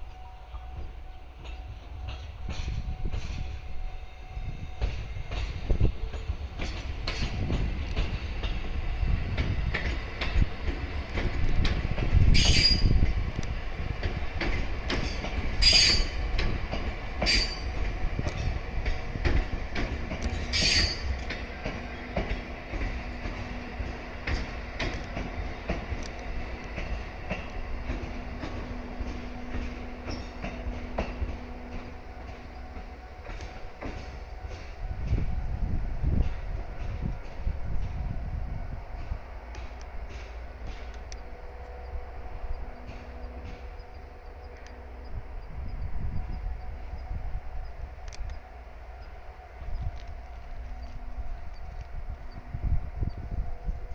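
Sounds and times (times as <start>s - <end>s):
train rumbling over rails: 0.0s - 53.9s
sharp wheel squeals: 12.3s - 13.0s, 15.6s - 16.3s, 17.2s - 17.7s, 20.5s - 21.2s.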